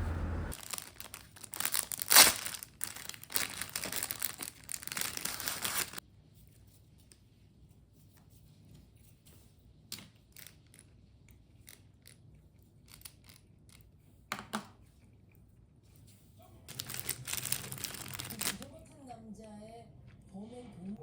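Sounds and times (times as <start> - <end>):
plastic packaging crinkling: 0.5 - 6.0, 16.7 - 18.6.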